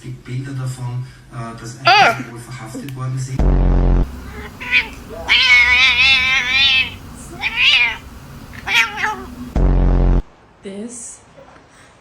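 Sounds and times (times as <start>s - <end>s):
cat meowing: 4.1s - 9.6s.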